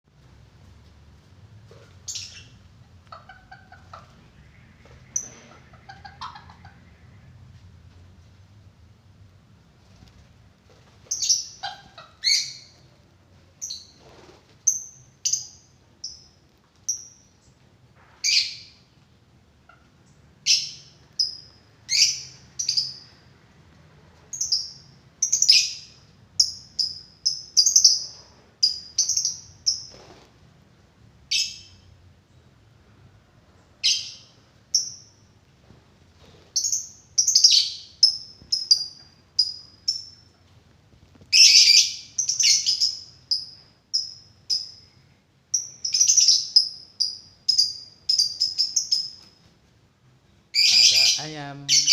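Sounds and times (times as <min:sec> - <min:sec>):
small bird chirping: 0:01.7 - 0:07.6, 0:09.8 - 0:12.9, 0:13.6 - 0:17.6, 0:19.7 - 0:23.3, 0:24.3 - 0:30.3, 0:31.3 - 0:32.4, 0:33.7 - 0:35.4, 0:36.3 - 0:40.5, 0:41.1 - 0:49.5, 0:50.5 - 0:51.9.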